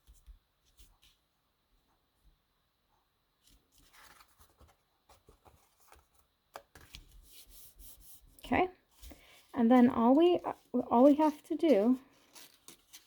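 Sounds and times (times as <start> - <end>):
cardstock rustling and tapping: 3.5 - 7.5, 9.0 - 13.0.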